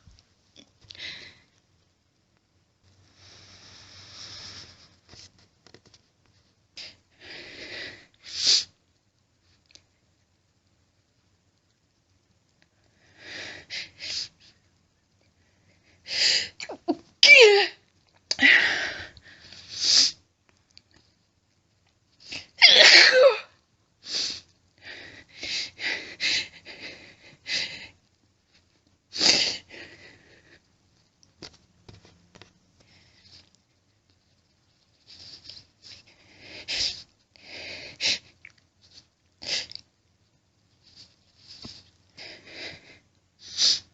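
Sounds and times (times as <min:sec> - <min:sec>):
woman sneezing: 0:16.7 - 0:17.8, 0:22.6 - 0:23.5.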